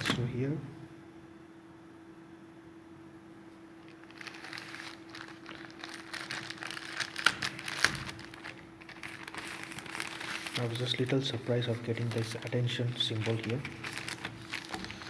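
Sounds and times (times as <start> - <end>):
plastic wrapping crinkling: 3.8 - 15.0.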